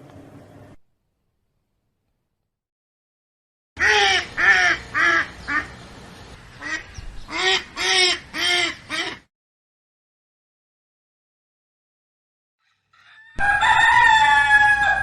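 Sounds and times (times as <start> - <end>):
duck quacking: 3.8 - 5.8, 6.6 - 9.3.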